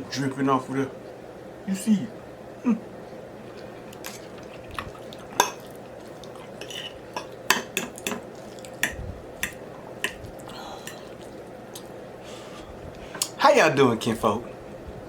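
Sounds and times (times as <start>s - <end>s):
cutlery clinking against plate: 6.6s - 10.2s.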